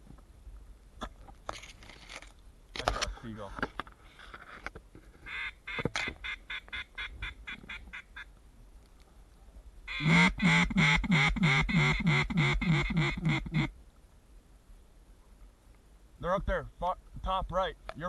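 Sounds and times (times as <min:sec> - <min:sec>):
duck call quacks: 0:05.3 - 0:08.3, 0:09.9 - 0:13.7.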